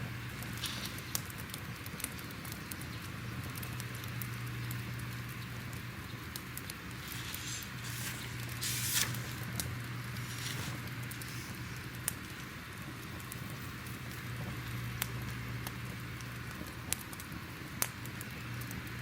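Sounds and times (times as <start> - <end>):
fire crackling: 0.1 - 19.0
steady low hum: 3.8 - 16.7
loud rustle: 6.9 - 12.1.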